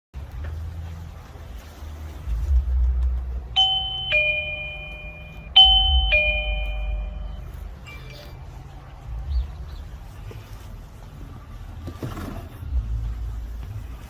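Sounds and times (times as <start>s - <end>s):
low rumble: 0.5s - 7.8s
doorbell ding-dong chime: 3.6s - 7.6s.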